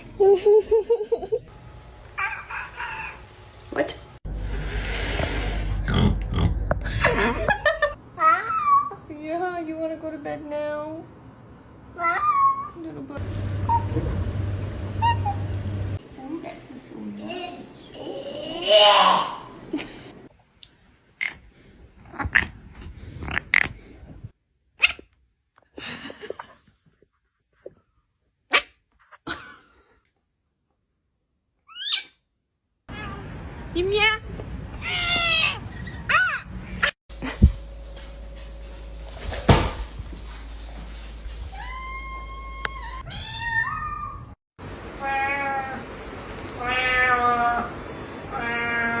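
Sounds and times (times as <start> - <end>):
cat meowing: 48.3 - 49.0.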